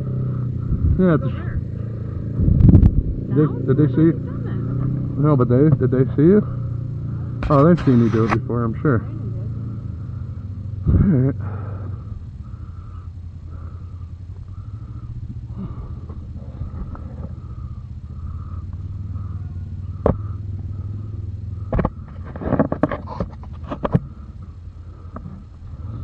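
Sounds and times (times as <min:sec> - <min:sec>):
atv engine idling: 0:00.0 - 0:26.0
sharp click: 0:07.4 - 0:08.4.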